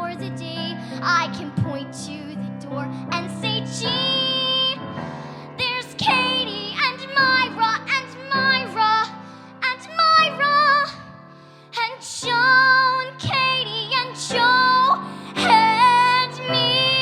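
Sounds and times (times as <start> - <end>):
solo singer with vibrato: 11.8 - 17.0
instrumental accompaniment: 15.0 - 17.0.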